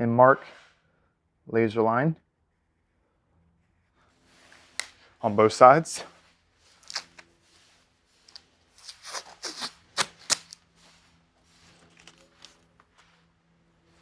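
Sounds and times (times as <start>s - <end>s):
faint steady hum: 0.0s - 14.0s
marker scratching on tape: 8.8s - 10.6s.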